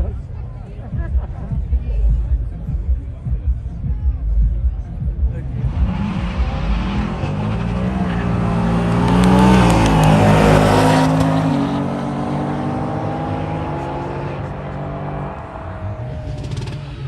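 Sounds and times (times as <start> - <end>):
car accelerating past: 5.6 - 17.0.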